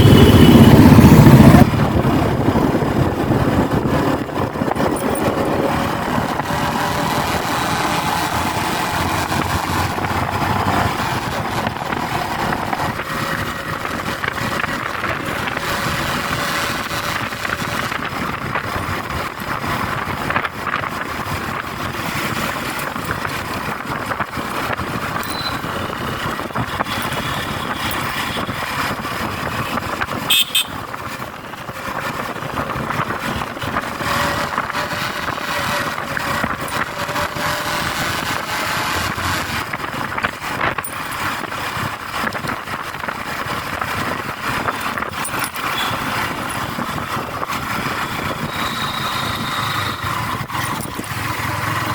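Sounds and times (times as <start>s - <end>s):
motorcycle engine: 0.0s - 51.9s
traffic noise: 0.0s - 51.9s
wind noise: 0.0s - 51.9s
horn toot: 30.3s - 30.8s, 48.4s - 50.3s.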